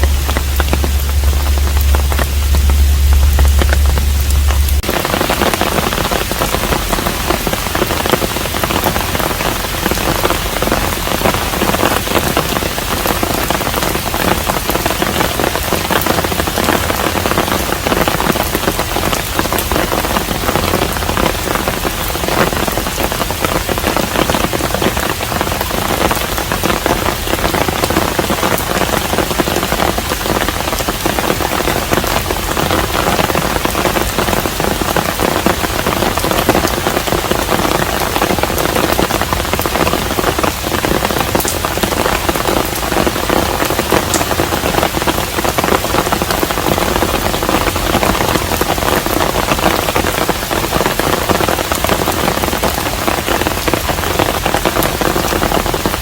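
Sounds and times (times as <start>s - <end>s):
deep low hum: 0.0s - 9.4s
steady rain patter: 0.0s - 56.0s.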